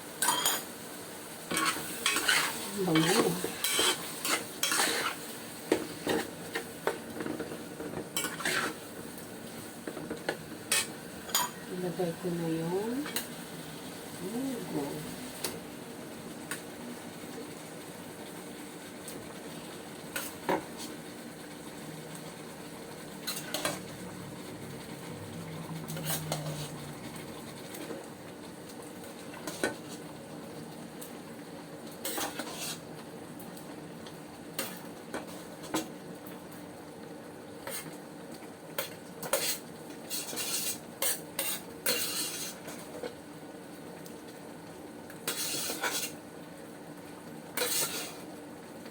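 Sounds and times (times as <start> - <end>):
low sizzle: 0.0 - 48.9
utensil scraping in pot: 1.5 - 5.2, 8.2 - 8.8, 25.8 - 27.9, 32.0 - 32.9, 39.2 - 43.1, 45.2 - 46.2, 47.6 - 48.3.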